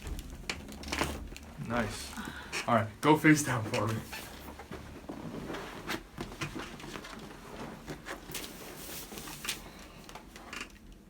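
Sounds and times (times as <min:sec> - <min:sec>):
rustling on padded table: 0:02.7 - 0:10.5.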